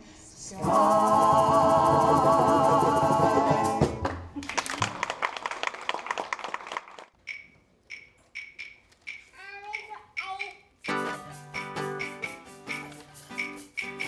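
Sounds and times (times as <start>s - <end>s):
group of voices singing: 0.0s - 4.3s
applause: 4.4s - 7.2s.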